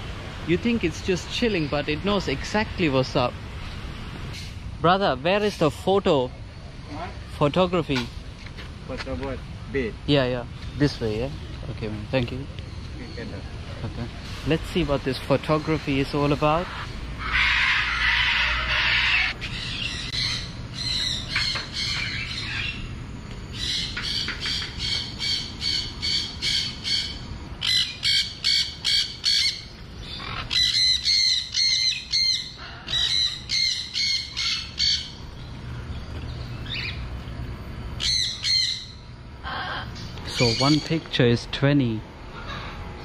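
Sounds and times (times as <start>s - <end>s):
birds squawking: 14.2s - 37.2s, 38.0s - 41.0s, 42.2s - 43.0s
loud harsh bird screech: 17.2s - 22.8s.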